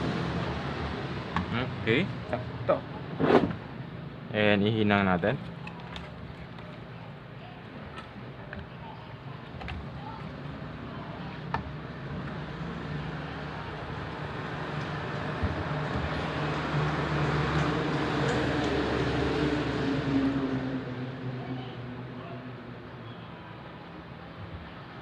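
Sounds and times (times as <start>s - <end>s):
vehicle engine: 0.0s - 7.2s, 9.6s - 21.9s.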